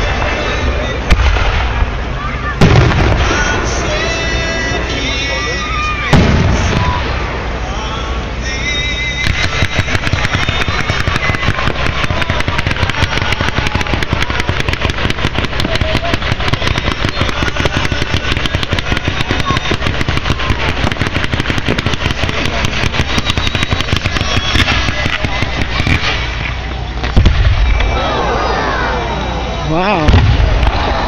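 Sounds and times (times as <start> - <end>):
rapid string of firework bangs: 0.0 - 5.2, 5.9 - 7.6, 9.0 - 28.1, 30.0 - 31.0
loud firework boom: 1.0 - 4.0, 6.0 - 7.5, 9.2 - 28.2, 30.0 - 31.0.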